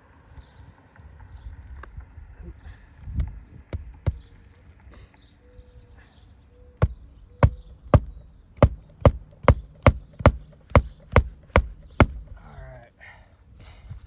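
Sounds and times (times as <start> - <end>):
hammer driving nails: 6.8 - 12.4.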